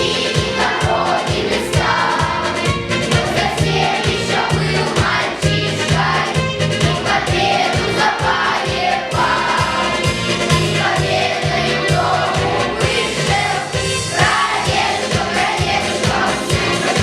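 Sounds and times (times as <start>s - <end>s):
backing track with steady beat: 0.0s - 17.0s
children singing in a choir: 0.0s - 17.0s.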